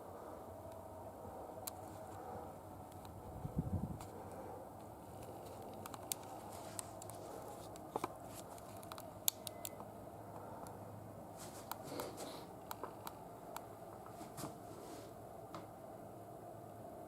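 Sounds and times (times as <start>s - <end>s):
faint steady hum: 0.0s - 17.0s
small clicks and taps: 4.8s - 9.9s.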